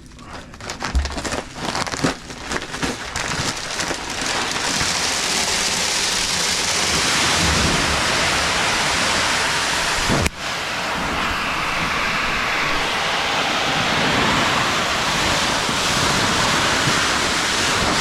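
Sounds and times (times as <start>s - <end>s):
bag rustling and clicks: 0.0s - 6.4s
pellets pouring from bag: 0.0s - 7.8s.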